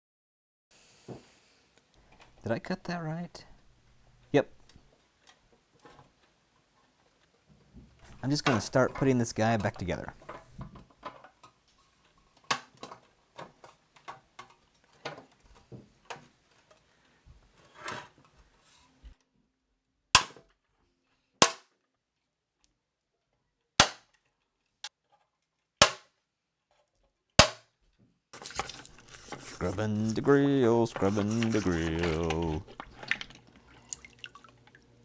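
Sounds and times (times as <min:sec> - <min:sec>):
toy parts clicking and knocking: 0:28.4 - 0:33.4.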